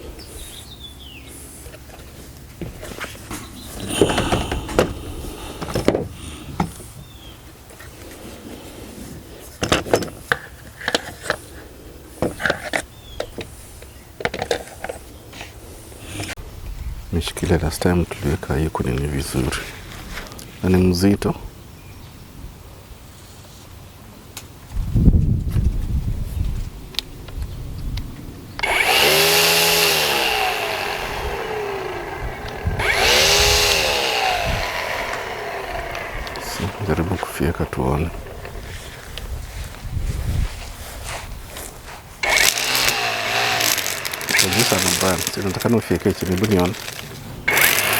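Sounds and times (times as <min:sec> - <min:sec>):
string trimmer motor whining: 0:03.3 - 0:06.7, 0:28.6 - 0:39.1, 0:42.2 - 0:47.9
hard plastic parts clicking: 0:03.8 - 0:05.0, 0:28.6 - 0:36.8, 0:42.2 - 0:47.9.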